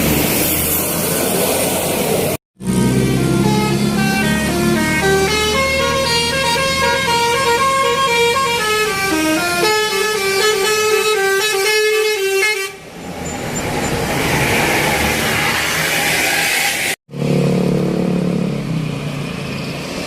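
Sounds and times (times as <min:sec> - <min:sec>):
multi-tone musical air horn: 0:02.6 - 0:12.8
rising rush of noise: 0:13.1 - 0:17.0.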